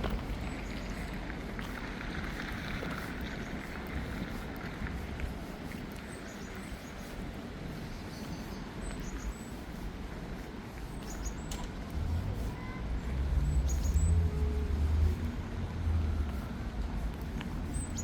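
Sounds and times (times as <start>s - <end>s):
city background noise: 0.0s - 18.0s
low rumble of traffic: 0.0s - 18.0s
small birds chirping: 7.8s - 9.8s, 10.9s - 11.6s.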